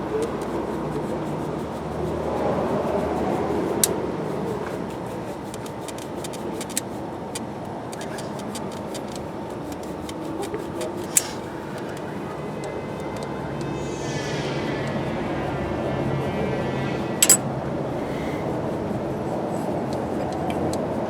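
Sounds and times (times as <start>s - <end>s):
steady mechanical hum: 0.0s - 21.0s
sharp metallic clicks and taps: 5.4s - 13.3s.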